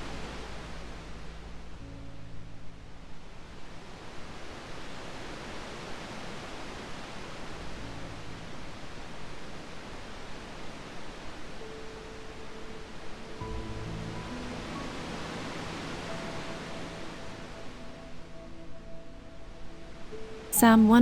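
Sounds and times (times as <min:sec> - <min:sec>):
soft music pad: 0:00.0 - 0:21.0.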